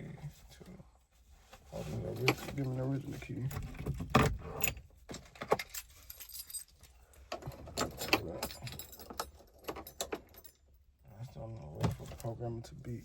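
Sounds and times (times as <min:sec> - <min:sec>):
car keys jingling: 0:02.1 - 0:10.9.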